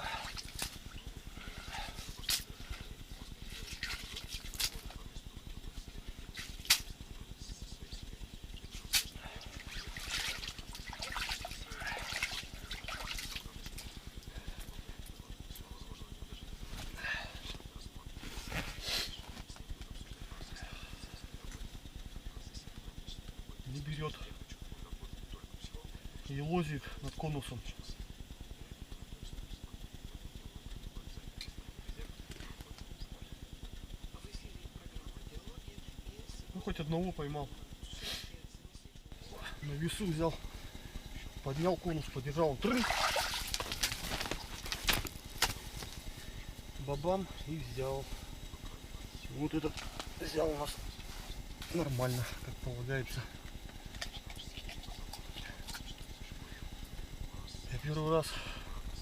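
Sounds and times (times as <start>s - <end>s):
water splashing and trickling: 9.6s - 13.4s, 42.6s - 44.0s.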